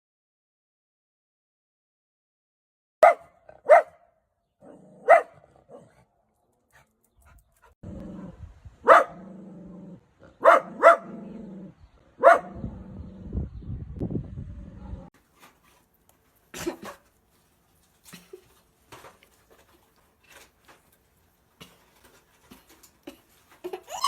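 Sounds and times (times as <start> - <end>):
dog barking: 3.0 - 4.1, 5.0 - 6.0, 8.8 - 9.3, 10.4 - 11.3, 12.2 - 12.6
dog growling: 9.2 - 11.8.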